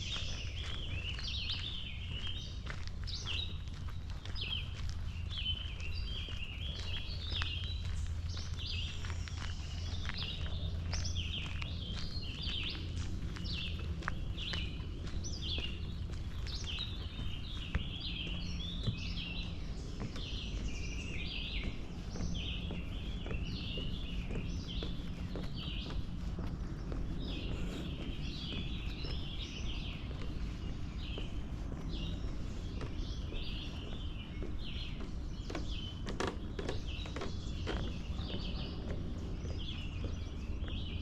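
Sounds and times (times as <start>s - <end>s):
faint footsteps on a path: 0.0s - 41.0s
small birds chirping: 0.0s - 41.0s.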